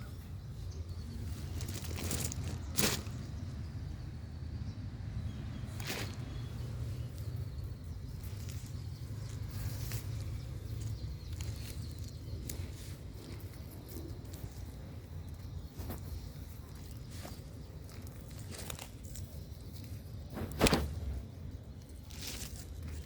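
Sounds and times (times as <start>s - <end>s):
steady low rumble: 0.3s - 23.0s
small clicks and crunches: 1.2s - 3.6s, 5.7s - 23.0s
hands scraping through soil: 5.6s - 23.0s.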